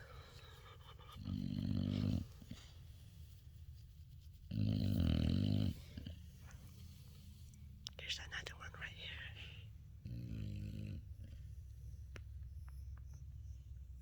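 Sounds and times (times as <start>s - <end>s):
dog snoring: 0.0s - 2.8s, 4.5s - 6.6s, 9.9s - 12.0s.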